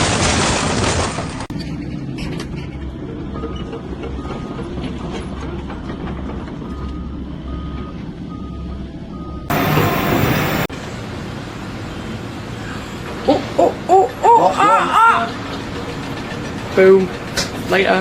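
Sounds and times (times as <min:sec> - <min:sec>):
heavy vehicle engine rumbling: 0:01.4 - 0:18.0
reversing alarm beeps: 0:06.6 - 0:10.7
sudden loud rush of noise: 0:09.5 - 0:12.6.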